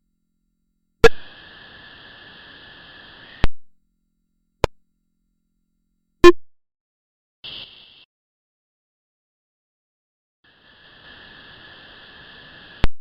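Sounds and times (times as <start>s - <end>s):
high electronic hiss: 1.0s - 3.6s, 7.4s - 8.1s, 10.5s - 13.0s.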